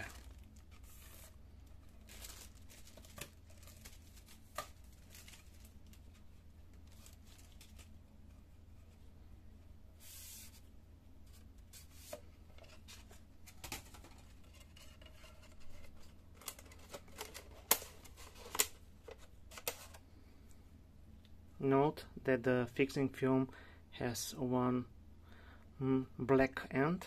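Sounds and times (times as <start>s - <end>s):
steady low hum: 0.0s - 26.9s.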